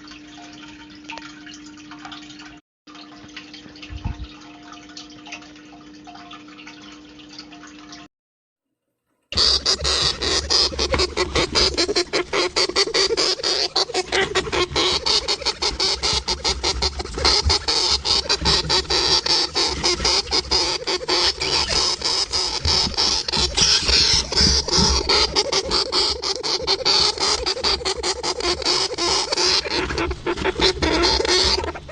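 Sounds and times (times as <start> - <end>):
small pet gnawing: 9.4 - 31.9.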